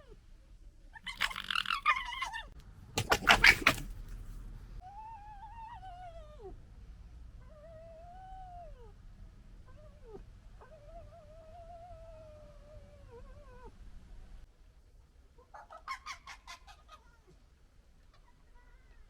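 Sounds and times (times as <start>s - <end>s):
fox whining: 0.9s - 4.0s
fox gekkering chatter: 1.0s - 4.0s.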